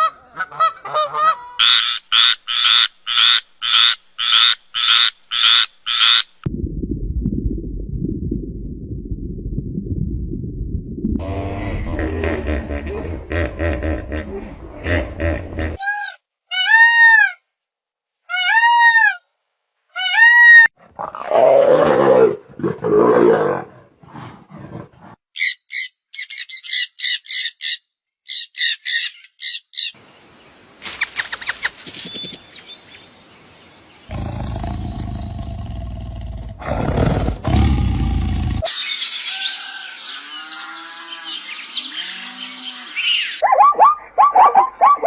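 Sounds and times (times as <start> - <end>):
animal growling call: 11.2 - 15.8, 20.8 - 25.2, 34.1 - 38.7
long low animal call: 11.2 - 15.9, 34.1 - 38.7
fast high chirps: 31.0 - 32.5
animal calls rising and falling: 36.6 - 45.0.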